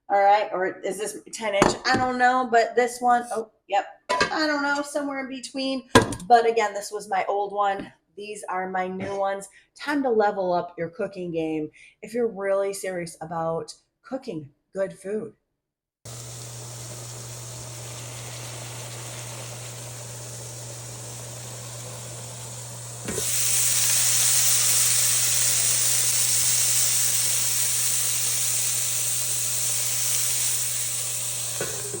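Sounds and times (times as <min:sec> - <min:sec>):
food sizzling in a pan: 0:16.1 - 0:32.0.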